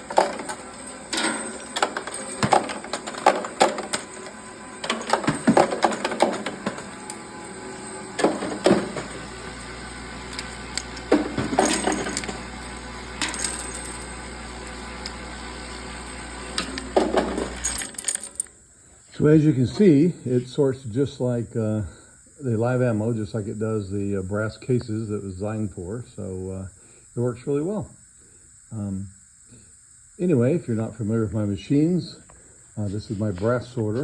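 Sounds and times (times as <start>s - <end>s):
cartridges clinking and rattling: 0.0s - 6.4s, 10.4s - 14.4s, 17.0s - 18.6s.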